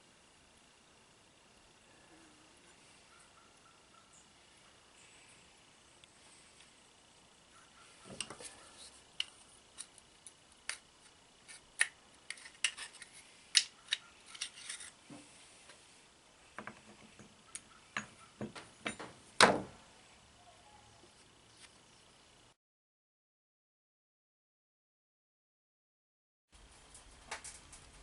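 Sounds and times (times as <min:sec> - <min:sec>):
metal parts clinking: 0:12.3 - 0:14.9.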